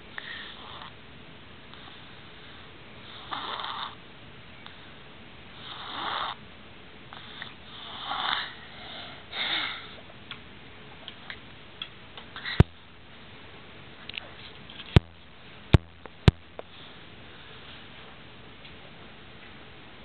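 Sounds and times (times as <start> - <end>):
girl snoring: 3.1 - 4.0, 5.6 - 6.4, 7.7 - 9.9.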